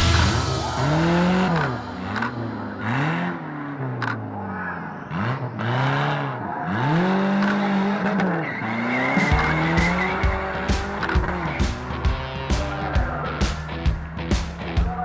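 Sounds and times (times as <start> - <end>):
music with heavy drum beat: 0.0 - 3.2, 9.2 - 15.0
high squeal: 0.0 - 3.9
car engines revving: 0.0 - 15.0.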